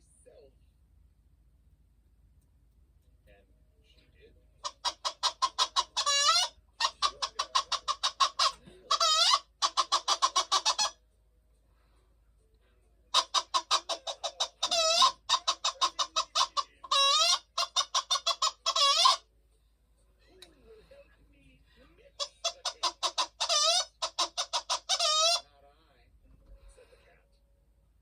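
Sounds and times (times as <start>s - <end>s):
hen cackling: 4.6s - 11.0s, 13.1s - 19.2s, 22.2s - 25.5s.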